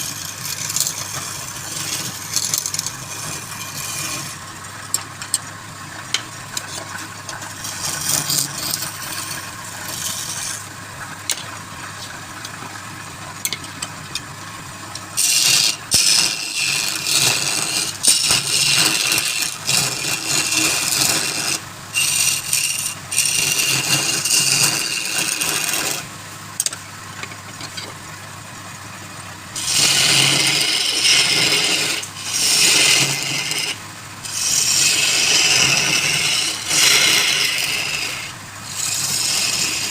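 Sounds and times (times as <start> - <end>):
wood lathe humming: 0.0 - 4.5, 7.6 - 10.7, 15.2 - 26.1, 29.5 - 39.9
tool scraping spinning wood: 0.0 - 5.2, 6.1 - 12.2, 15.1 - 28.0, 29.5 - 39.9.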